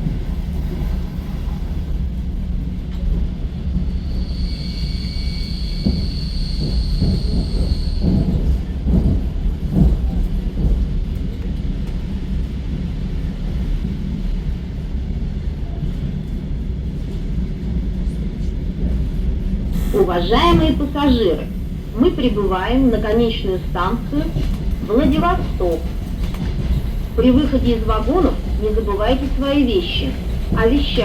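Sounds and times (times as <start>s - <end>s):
train low rumble: 0.0s - 31.0s.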